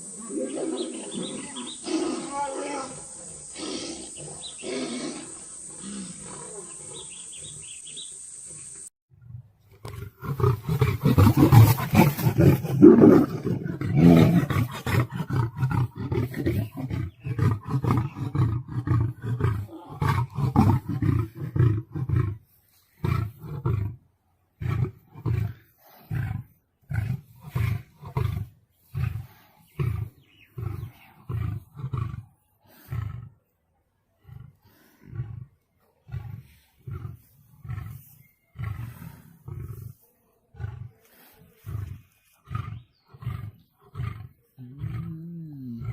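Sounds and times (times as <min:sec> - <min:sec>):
big cats roaring and snarling: 0:00.0 - 0:45.9
deep grunting roars: 0:09.8 - 0:22.4, 0:24.6 - 0:33.5, 0:34.2 - 0:45.9.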